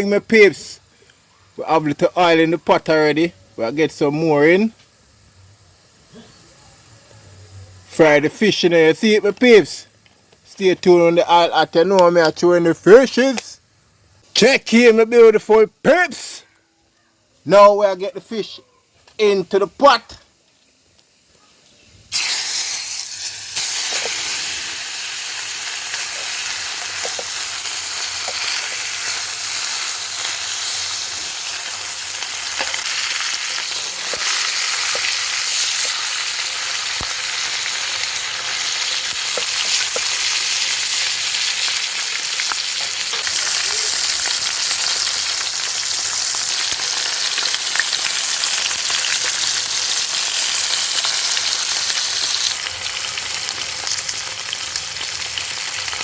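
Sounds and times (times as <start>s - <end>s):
fish sizzling in hot oil: 4.7s - 7.8s, 20.3s - 56.0s
oil popping: 22.1s - 45.4s.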